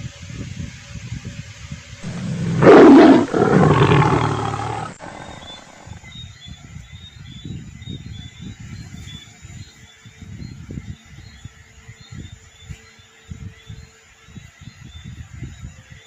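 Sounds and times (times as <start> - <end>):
kitten growling: 2.0 - 6.0.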